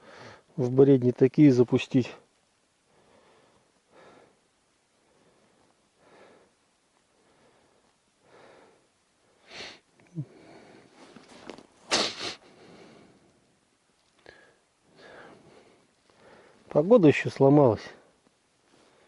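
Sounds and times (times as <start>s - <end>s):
man breathing and sniffing: 2.9s - 13.5s, 14.2s - 16.7s
sharp noisy sniff: 9.4s - 9.8s, 10.5s - 13.2s
microphone handling rustles: 10.9s - 12.4s.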